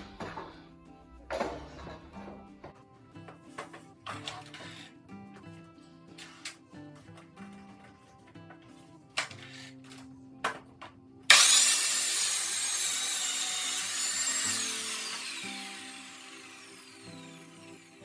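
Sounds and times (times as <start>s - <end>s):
power saw cutting wood: 11.3s - 18.0s.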